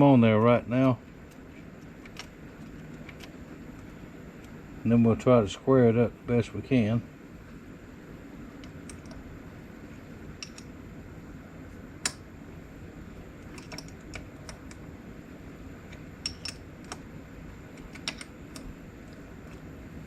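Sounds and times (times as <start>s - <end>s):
low steady hum: 0.0s - 20.0s
metallic clicks of nuts and bolts: 8.6s - 9.2s, 10.4s - 10.7s, 13.4s - 14.8s, 15.9s - 17.0s, 17.7s - 18.7s.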